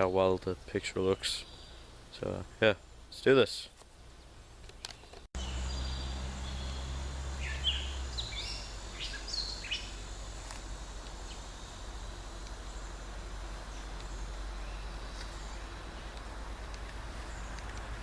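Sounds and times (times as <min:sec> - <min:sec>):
outdoor background noise: 0:00.0 - 0:18.0
short high bird chirps: 0:05.4 - 0:10.0
low hum: 0:05.4 - 0:18.0.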